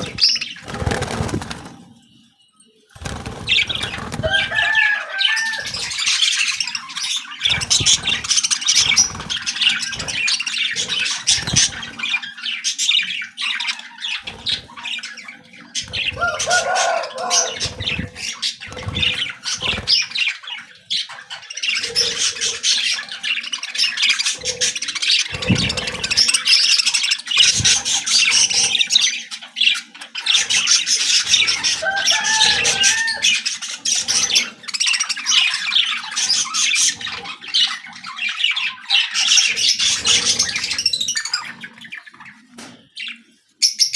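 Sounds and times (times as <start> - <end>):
wings flapping: 0.0 - 1.9, 3.0 - 6.8, 7.4 - 12.3, 14.2 - 14.9, 15.7 - 20.3, 24.1 - 29.0, 30.4 - 35.2
birds chirping and squawking: 0.0 - 43.9.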